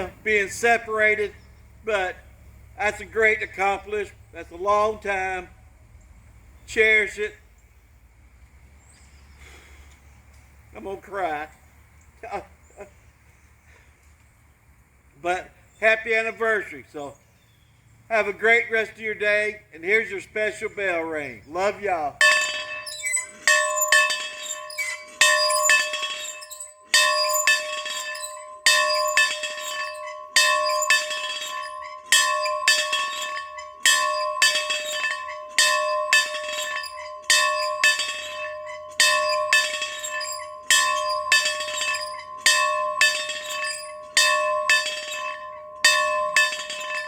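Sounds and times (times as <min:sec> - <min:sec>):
bell ringing: 0:22.2 - 0:47.0.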